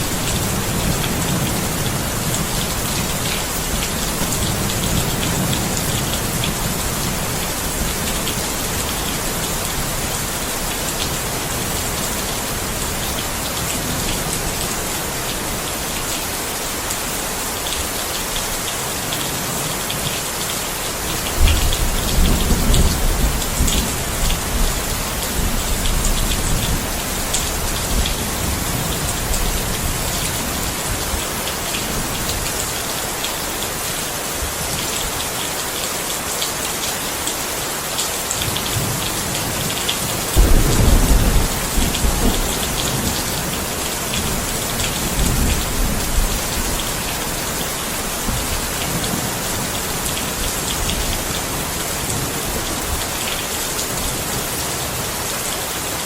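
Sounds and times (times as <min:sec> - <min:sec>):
steady rain: 0:00.0 - 0:56.0
thunder rumbling: 0:40.3 - 0:52.3.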